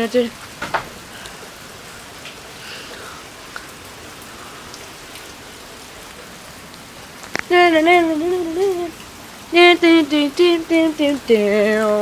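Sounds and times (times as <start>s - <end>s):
steady rain hiss: 0.0s - 12.0s
faint drip ticks: 2.2s - 5.4s, 6.0s - 12.0s.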